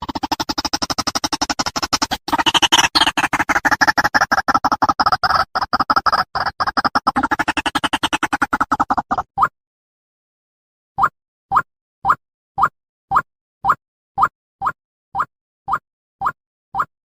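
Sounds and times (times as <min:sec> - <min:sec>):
waterhen harsh chattering call: 0:00.0 - 0:09.2.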